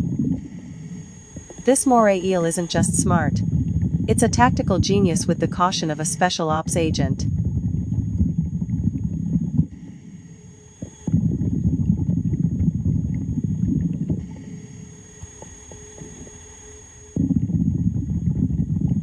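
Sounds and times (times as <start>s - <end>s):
underwater exhaled bubbles: 7.3s - 9.8s, 10.8s - 16.4s.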